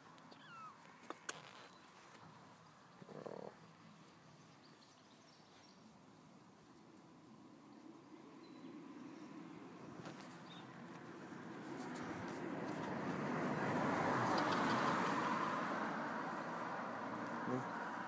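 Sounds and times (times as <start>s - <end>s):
vehicle passing by: 8.1s - 18.0s.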